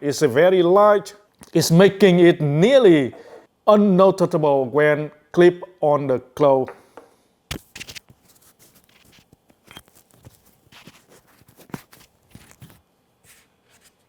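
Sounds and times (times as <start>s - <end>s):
light clicks and rustles of handling: 7.9s - 14.0s.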